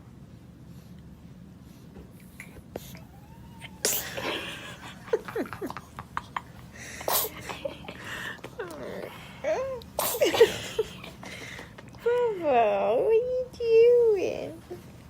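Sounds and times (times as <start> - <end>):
baby sneezing: 3.7 - 4.4, 7.0 - 7.6, 10.0 - 10.6.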